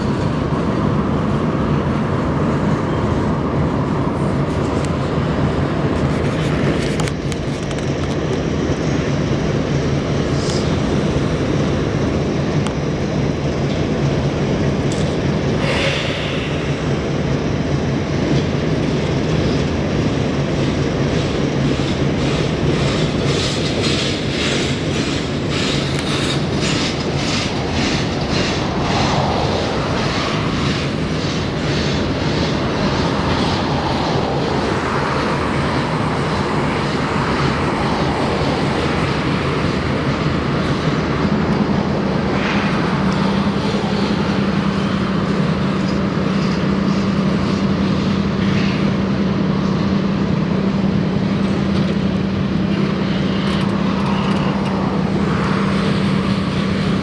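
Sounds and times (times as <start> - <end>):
train rumble and hum: 0.0 - 57.0
train wheels clacking: 12.2 - 50.0.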